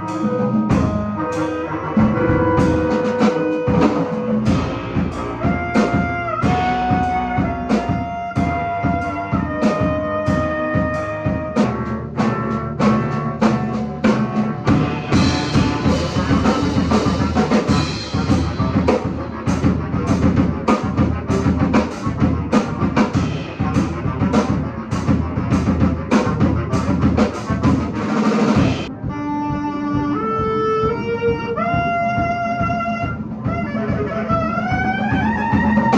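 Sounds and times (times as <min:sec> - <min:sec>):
cymbals: 0:00.0 - 0:28.9
heavy metal clarinet ensemble: 0:00.0 - 0:35.9
rapid drum hits: 0:01.9 - 0:11.5, 0:12.8 - 0:29.0.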